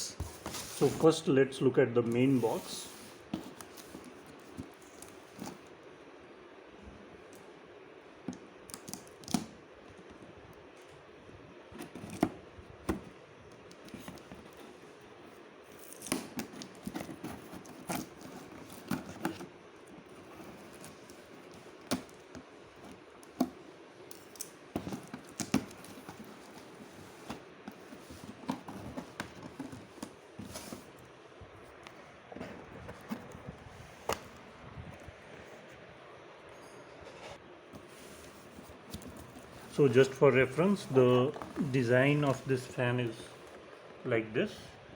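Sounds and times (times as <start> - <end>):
cardboard box being unpacked: 0.1 - 1.2, 2.2 - 5.7, 15.7 - 23.6, 24.3 - 31.0, 37.8 - 42.7.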